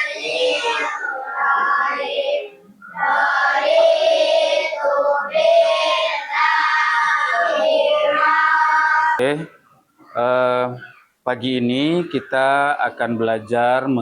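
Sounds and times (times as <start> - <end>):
children chanting a prayer in unison: 0.0 - 9.4.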